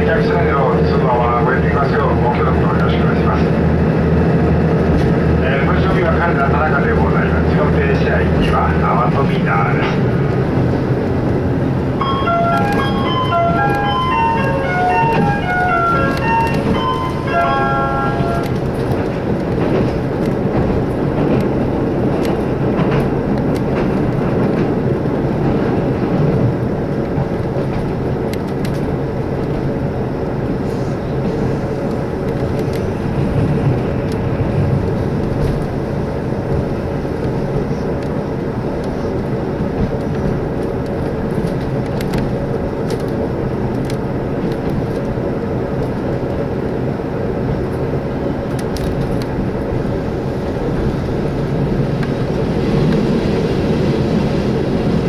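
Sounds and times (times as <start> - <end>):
train engine and wheel rumble: 0.0 - 55.0
short chime melody: 12.0 - 18.4
faint clicks from rails: 12.3 - 29.8, 30.4 - 35.8, 36.5 - 38.2, 38.8 - 46.8, 47.5 - 53.2.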